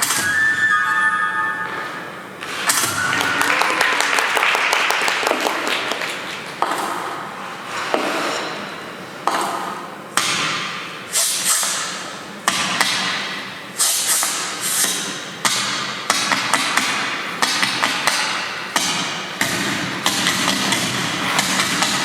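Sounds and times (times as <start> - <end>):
quick clapping: 2.7 - 6.6.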